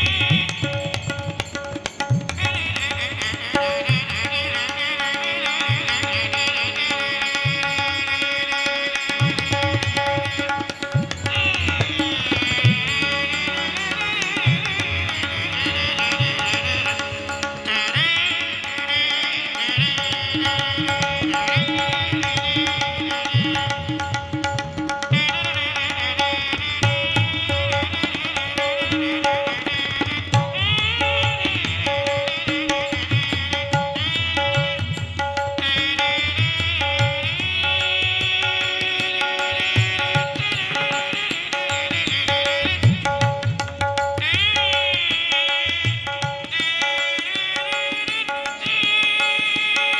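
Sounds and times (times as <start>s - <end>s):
tabla-style drum strokes: 0.0s - 49.9s
held drone note: 11.2s - 24.0s.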